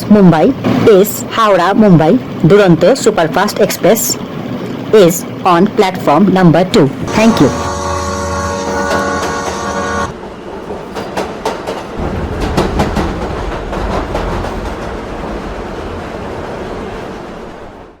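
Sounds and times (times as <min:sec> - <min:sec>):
train rumbling past: 0:00.0 - 0:18.0
train horn blast: 0:07.0 - 0:10.2.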